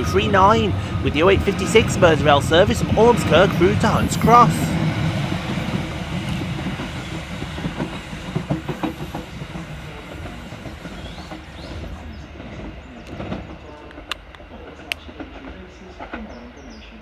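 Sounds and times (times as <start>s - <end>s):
train running noise: 0.0s - 17.0s
wheels clicking over rail joints: 12.5s - 16.2s.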